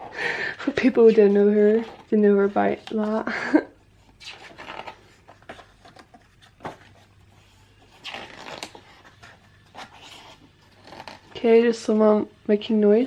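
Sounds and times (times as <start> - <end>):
paper pages rustling: 0.7 - 3.3, 4.0 - 11.4.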